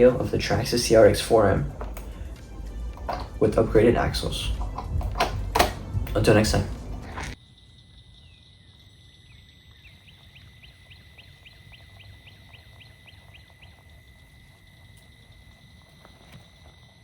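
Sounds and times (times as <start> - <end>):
low rumble: 0.0 - 7.4
bird chirping: 0.0 - 14.3.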